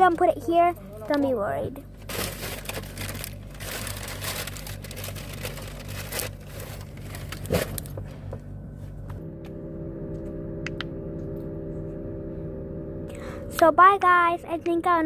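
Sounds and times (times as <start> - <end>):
steady low hum: 0.0 - 15.0
plastic packaging rustling: 1.9 - 8.0.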